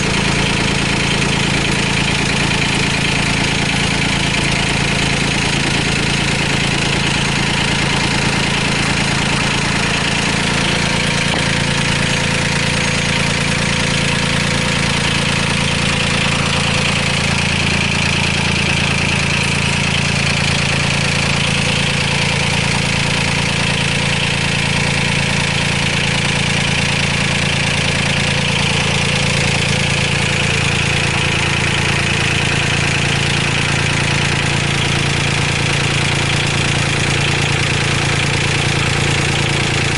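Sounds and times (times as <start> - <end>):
wheel loader engine idling: 0.0 - 39.9.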